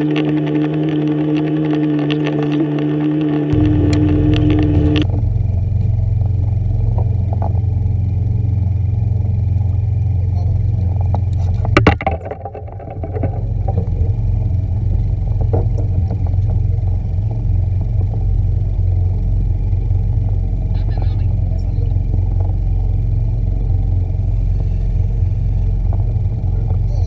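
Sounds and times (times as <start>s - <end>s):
steady low rumbling: 0.0s - 5.3s.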